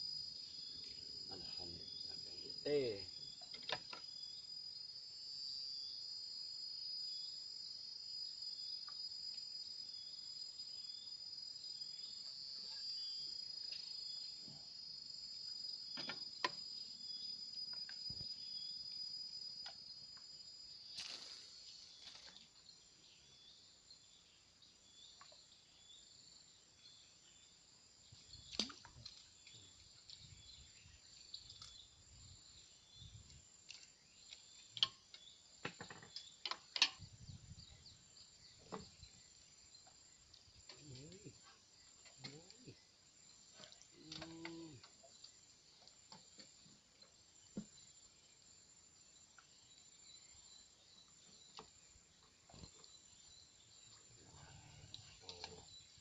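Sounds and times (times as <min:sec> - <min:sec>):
high-pitched insect chorus: 0:00.0 - 0:56.0.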